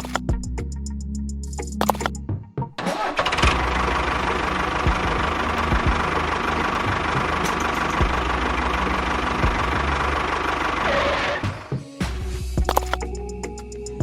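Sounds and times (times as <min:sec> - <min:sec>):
engine idling: 0:02.9 - 0:11.7.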